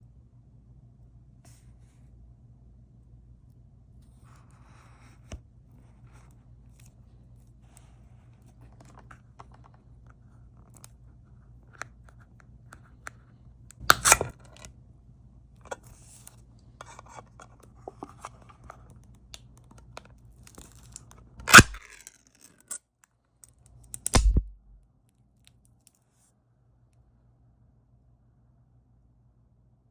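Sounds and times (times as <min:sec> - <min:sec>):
faint steady hum: 0:00.0 - 0:21.9
can handling clicks and scrapes: 0:13.8 - 0:14.7, 0:15.7 - 0:19.0, 0:19.9 - 0:22.8
can lid cracking and tearing open: 0:13.8 - 0:14.7, 0:20.4 - 0:22.3.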